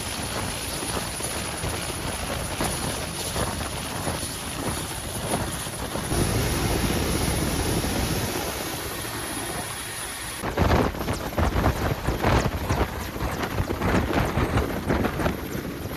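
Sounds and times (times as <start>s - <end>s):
helicopter running: 0.0s - 15.9s.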